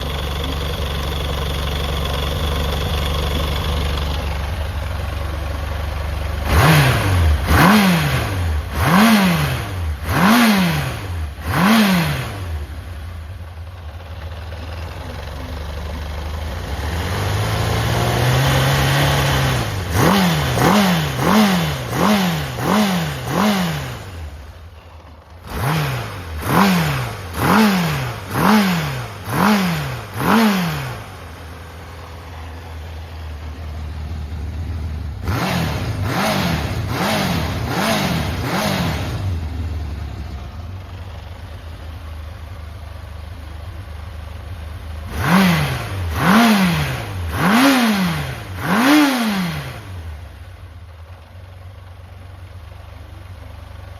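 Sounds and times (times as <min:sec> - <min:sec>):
motorcycle engine revving: 0:00.0 - 0:51.6.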